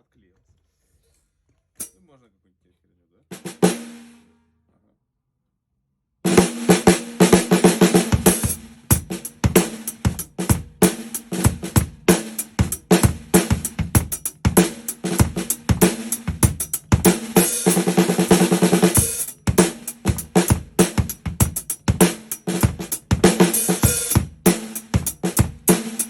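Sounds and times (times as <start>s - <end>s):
snare drum roll: 6.3s - 26.0s.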